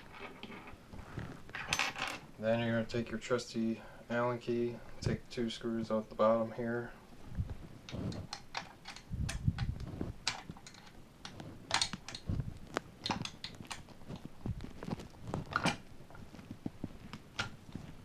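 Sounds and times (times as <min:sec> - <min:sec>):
gun handling clicks and knocks: 0:07.8 - 0:17.6
allen key clicking and scraping: 0:07.9 - 0:12.3.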